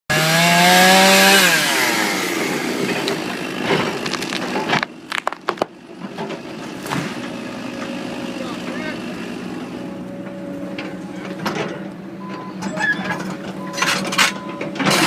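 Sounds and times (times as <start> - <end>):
chainsaw engine: 0.1 - 10.2
wood cracking: 2.9 - 5.8.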